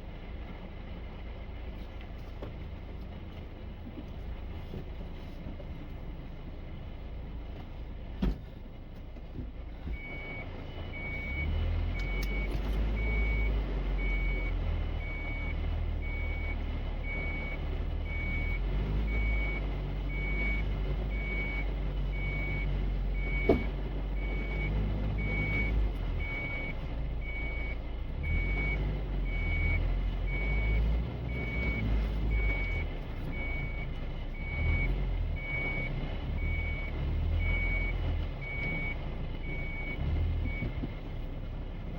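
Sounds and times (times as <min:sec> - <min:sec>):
engine rumble: 0:00.0 - 0:41.9
click: 0:12.0 - 0:12.8.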